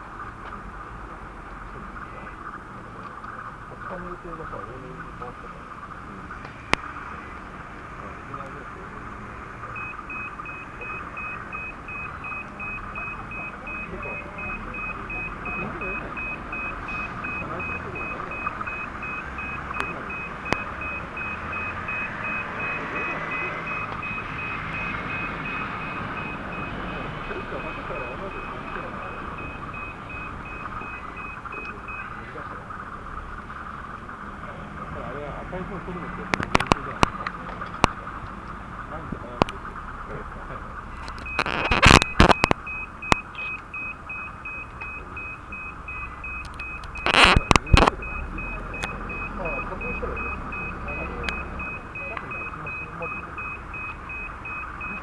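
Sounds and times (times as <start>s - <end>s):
level-crossing warning bell: 8.2s - 33.8s, 41.1s - 55.0s
sharp clicks: 9.6s - 32.2s, 36.1s - 38.6s, 39.4s - 39.8s, 41.0s - 55.0s.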